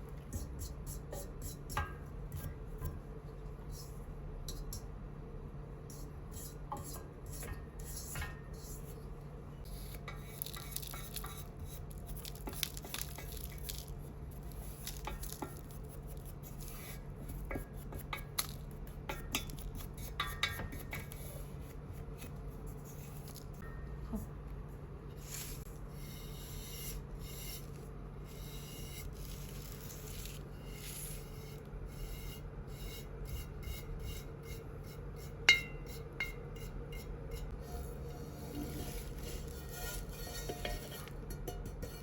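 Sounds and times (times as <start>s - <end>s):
steady low hum: 0.0s - 42.0s
metal clinking and scraping: 37.4s - 42.0s.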